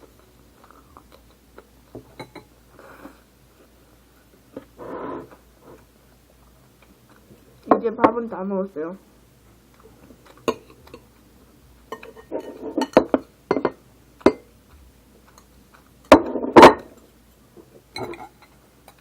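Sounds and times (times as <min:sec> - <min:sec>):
spoon clinking against a dish: 0:02.2 - 0:02.5, 0:11.9 - 0:14.5, 0:18.0 - 0:19.0.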